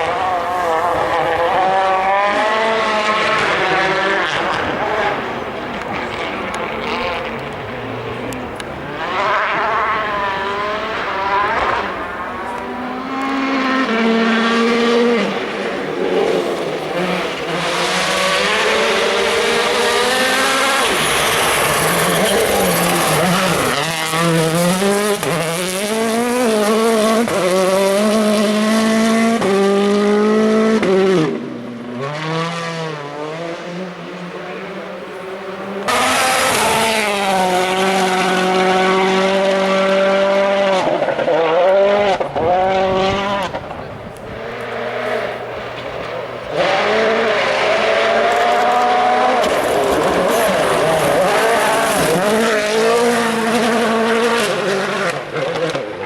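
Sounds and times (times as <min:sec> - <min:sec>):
rally car engine shifting gears: 0:00.0 - 0:56.0
tyre and gravel rush: 0:18.8 - 0:25.0.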